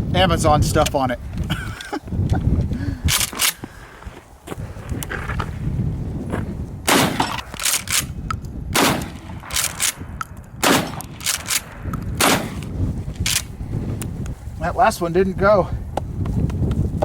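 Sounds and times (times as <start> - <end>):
shotgun shots: 6.9 - 8.1, 8.7 - 12.7
shotgun pump racking clack: 7.2 - 8.5, 9.4 - 13.5.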